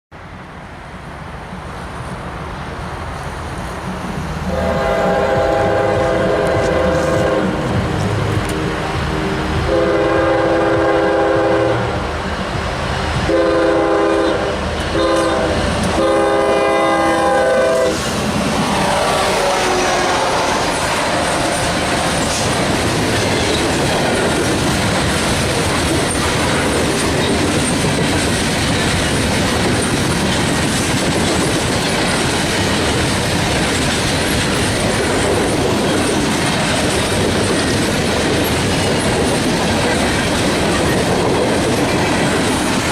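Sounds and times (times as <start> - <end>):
locomotive air horn blasts: 4.5 - 7.8, 9.7 - 12.2, 13.2 - 18.0, 18.7 - 22.6
train wheels clacking over rail joints: 12.6 - 42.9.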